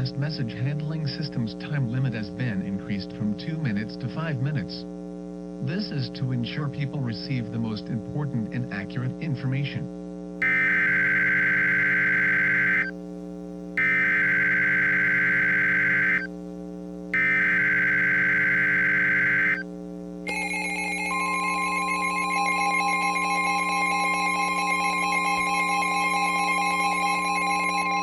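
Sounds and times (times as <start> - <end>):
background hum: 0.0 - 28.0
steady alarm tone: 10.4 - 12.9, 13.8 - 16.3, 17.1 - 19.6, 20.3 - 28.0
warbling electronic data tones: 10.4 - 12.9, 13.8 - 16.3, 17.2 - 19.6, 20.3 - 28.0.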